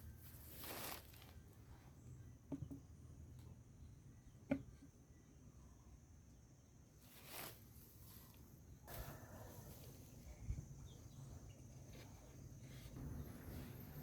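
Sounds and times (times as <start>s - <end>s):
soft brushing handling noise: 0.0s - 2.0s, 7.0s - 14.0s.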